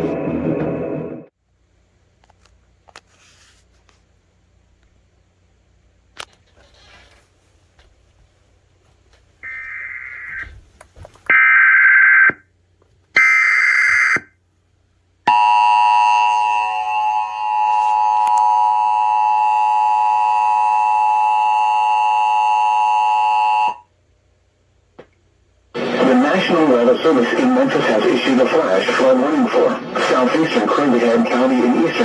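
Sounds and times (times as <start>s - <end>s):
screeching data tones: 9.4s - 10.5s.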